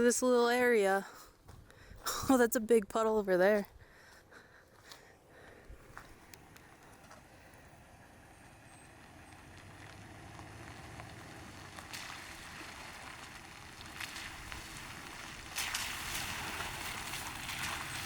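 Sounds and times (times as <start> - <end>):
truck engine hum: 5.1 - 18.0
water splashing against truck: 9.0 - 18.0.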